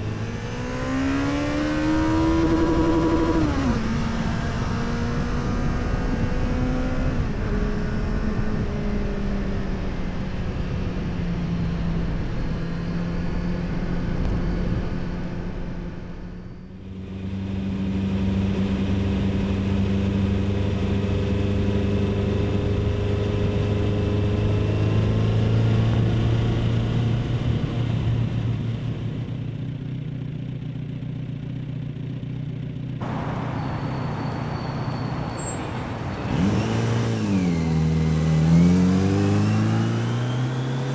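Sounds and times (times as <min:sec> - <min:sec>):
motorcycle exhaust: 0:16.9 - 0:40.9.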